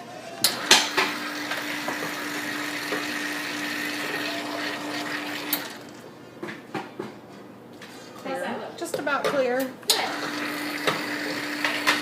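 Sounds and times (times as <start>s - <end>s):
espresso machine pump humming: 0.1s - 6.0s, 9.9s - 12.0s.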